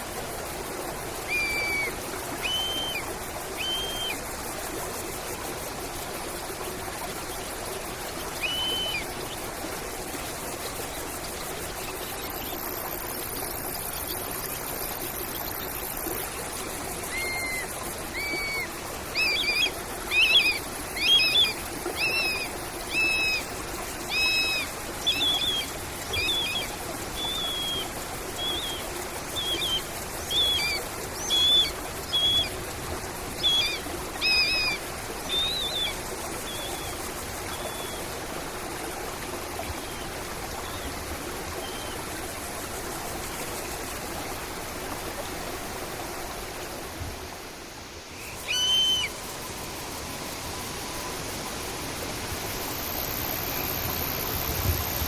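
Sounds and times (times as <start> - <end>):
trickling stream: 0.0 - 55.0.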